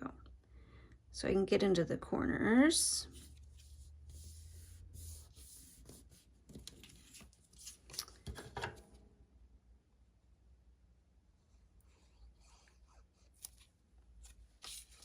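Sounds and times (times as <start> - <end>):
paper handling: 3.1 - 8.8, 13.4 - 15.0.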